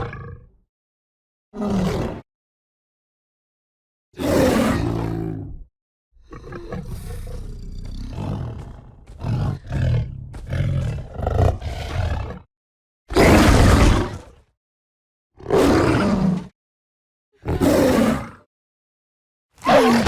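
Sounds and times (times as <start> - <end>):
big cat roaring: 1.6 - 2.2, 4.2 - 5.6, 6.2 - 12.5, 13.1 - 14.4, 15.4 - 16.5, 19.6 - 20.0
big cat growling: 4.2 - 12.5, 19.6 - 20.0.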